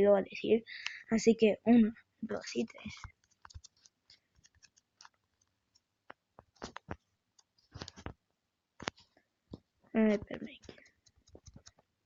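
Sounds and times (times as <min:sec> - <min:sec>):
keyboard typing clicks: 0:02.7 - 0:05.9, 0:10.5 - 0:11.8.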